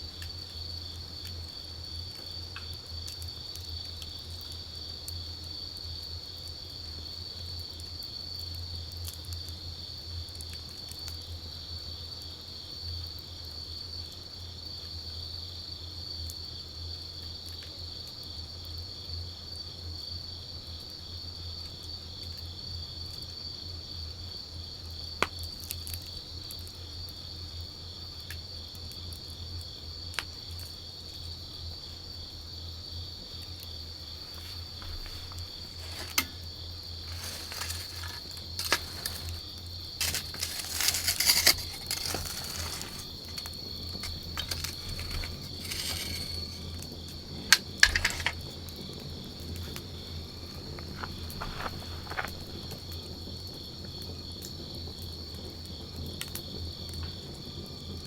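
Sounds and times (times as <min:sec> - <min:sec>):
campfire crackling: 0:34.2 - 0:52.0.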